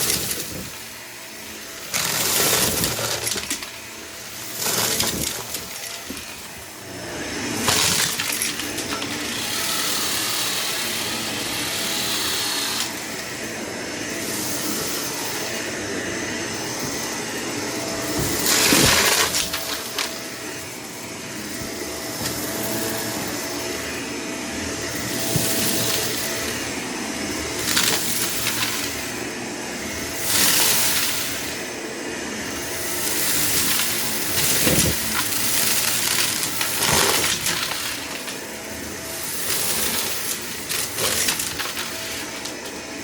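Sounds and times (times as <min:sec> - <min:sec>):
debris rattling through vacuum: 0:00.0 - 0:01.1, 0:01.8 - 0:10.3, 0:18.0 - 0:20.9, 0:25.0 - 0:26.8, 0:27.4 - 0:29.3, 0:29.9 - 0:31.7, 0:32.9 - 0:43.0
vacuum cleaner running: 0:00.0 - 0:43.0.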